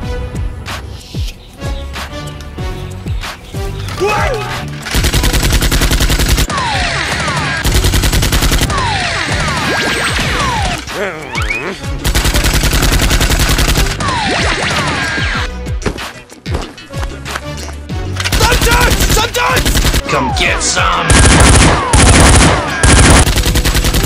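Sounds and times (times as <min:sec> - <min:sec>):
automatic gunfire bursts: 0:04.8 - 0:09.6, 0:12.0 - 0:14.0, 0:18.3 - 0:20.0, 0:21.1 - 0:24.0.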